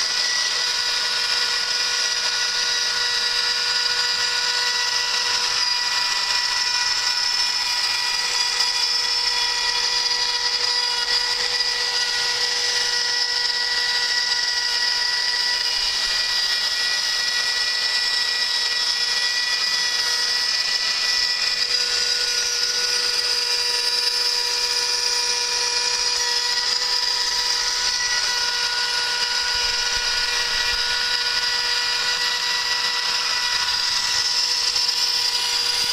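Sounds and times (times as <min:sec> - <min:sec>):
router spindle milling metal: 0:00.0 - 0:35.9.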